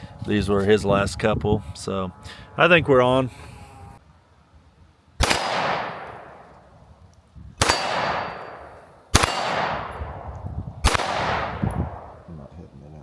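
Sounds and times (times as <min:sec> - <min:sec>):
pistol shots with ringing decay: 0:05.2 - 0:06.7, 0:07.6 - 0:12.3.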